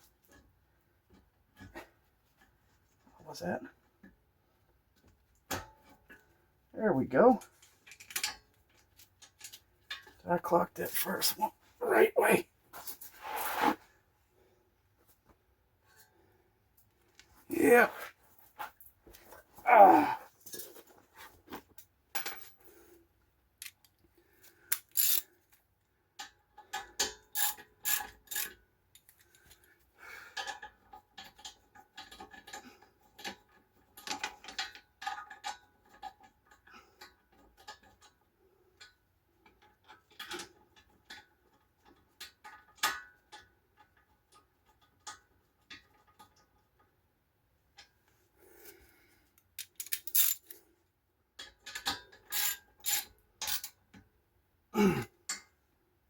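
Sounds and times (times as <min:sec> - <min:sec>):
clinks and knocks of tools: 0:07.4 - 0:10.2, 0:20.3 - 0:22.8, 0:30.4 - 0:38.2, 0:49.4 - 0:50.6, 0:51.4 - 0:54.1
ratchet wrench clicking: 0:24.7 - 0:25.2, 0:27.4 - 0:28.5, 0:49.6 - 0:50.5, 0:52.3 - 0:53.7.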